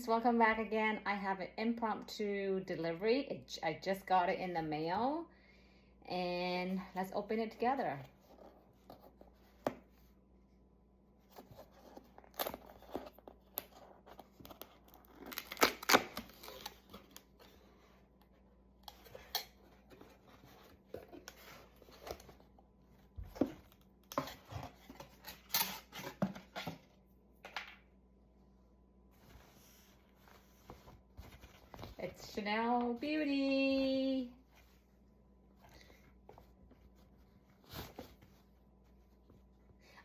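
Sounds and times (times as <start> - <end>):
packaging tearing and rustling: 11.8 - 17.3.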